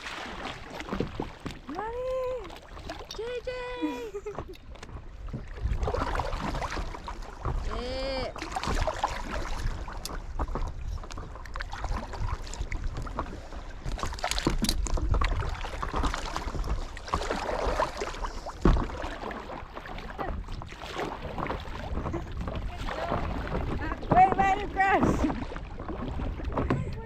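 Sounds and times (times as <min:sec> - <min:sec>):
paddles splashing water: 0:00.0 - 0:27.0
wind buffeting microphone: 0:03.1 - 0:27.0.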